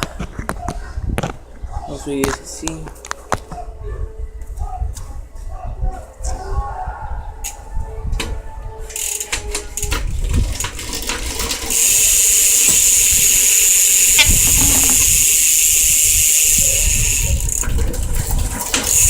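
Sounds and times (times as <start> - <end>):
bike hub clicks: 9.0 - 19.0
bike hub freewheeling buzz: 9.0 - 19.0.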